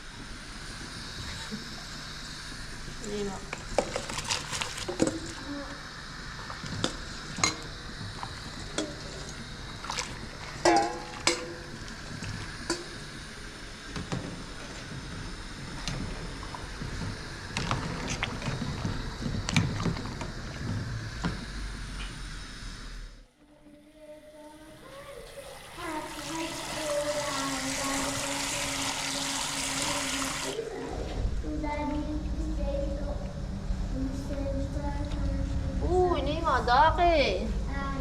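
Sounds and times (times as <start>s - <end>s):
steady low hum: 0.0s - 25.2s, 30.5s - 38.0s
dishes and pots clinking: 6.8s - 7.7s, 10.6s - 11.8s.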